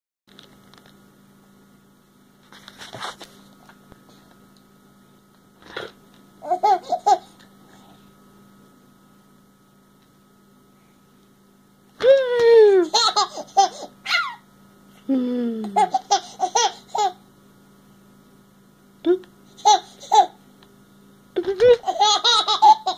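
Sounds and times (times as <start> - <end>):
steady electrical hum: 0.3 - 22.9
baby giggling: 6.4 - 7.3, 12.8 - 14.4, 15.7 - 17.2, 19.6 - 20.4, 21.4 - 22.9.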